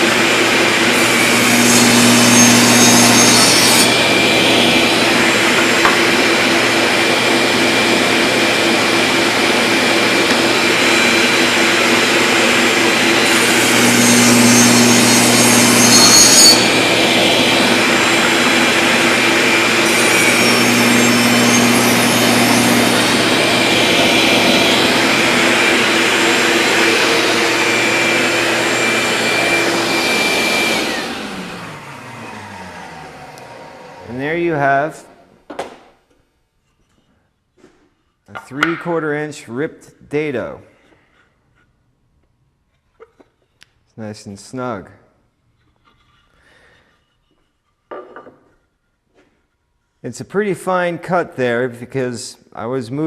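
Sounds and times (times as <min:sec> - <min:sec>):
saw winding down: 0:00.0 - 0:34.6
saw blade cutting wood: 0:00.0 - 0:34.7
table saw running: 0:00.0 - 0:34.8
dust vacuum: 0:00.0 - 0:35.0.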